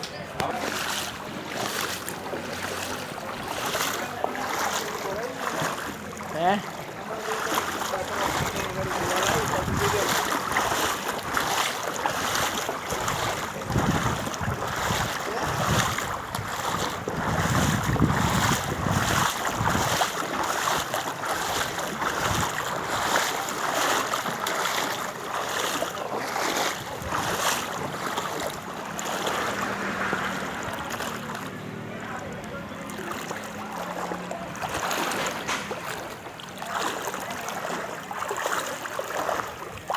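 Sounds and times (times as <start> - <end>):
rushing water: 0.0 - 39.9
wind buffeting microphone: 7.6 - 23.4, 25.6 - 31.4.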